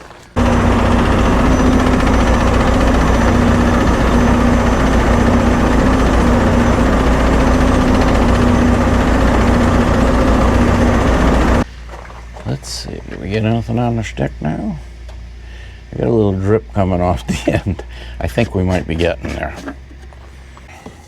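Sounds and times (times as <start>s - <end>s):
diesel truck engine idling: 0.4s - 19.2s.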